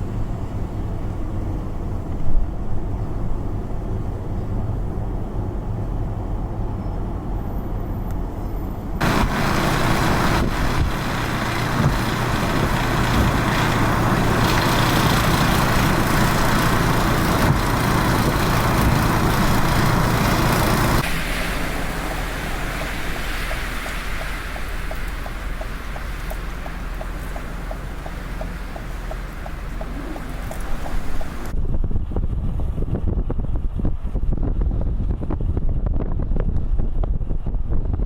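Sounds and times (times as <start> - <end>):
engine running low hum: 0.0 - 38.0
loud rushing noise: 9.0 - 31.5.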